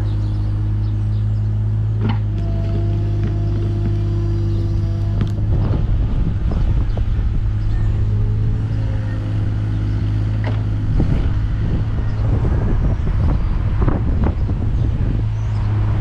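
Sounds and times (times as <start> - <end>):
excavator diesel engine running: 0.0 - 16.0.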